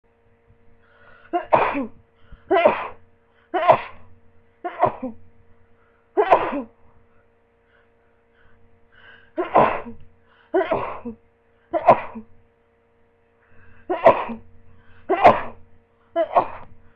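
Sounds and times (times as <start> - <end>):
person sneezing: 1.3 - 3.0, 3.6 - 4.0, 6.2 - 6.8, 9.4 - 10.0, 10.6 - 12.3, 13.9 - 14.4, 15.1 - 15.6, 16.2 - 16.7.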